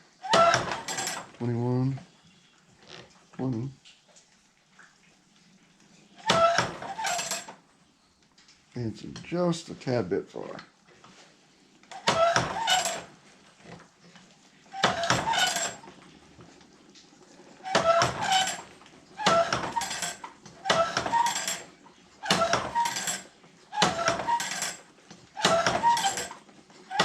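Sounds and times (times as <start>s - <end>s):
ringing metal clanks and clicks: 19.2s - 26.4s.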